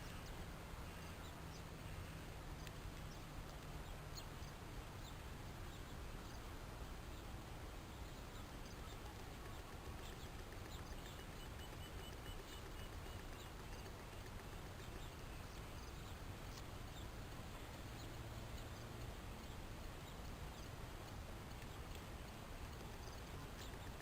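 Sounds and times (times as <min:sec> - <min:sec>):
background hiss: 0:00.0 - 0:24.0
guinea pig squeaks and chirps: 0:08.0 - 0:20.8, 0:22.7 - 0:24.0.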